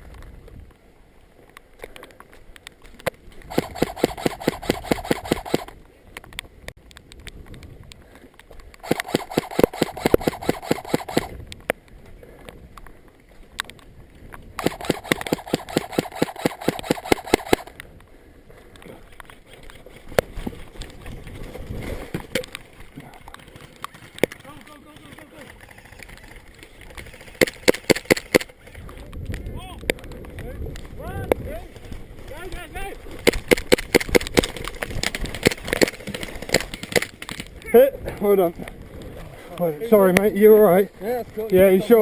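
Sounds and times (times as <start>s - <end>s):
airsoft gun full-auto bursts: 3.5s - 5.7s, 8.8s - 11.4s, 14.6s - 17.7s.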